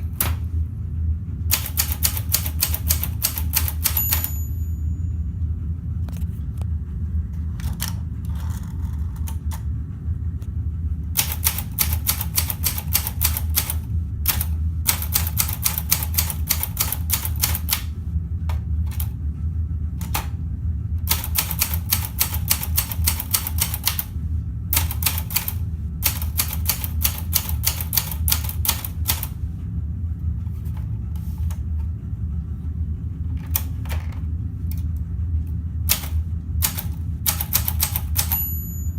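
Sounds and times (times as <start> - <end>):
low hum: 0.0 - 38.9
typewriter key strikes: 1.5 - 4.4, 35.9 - 38.6.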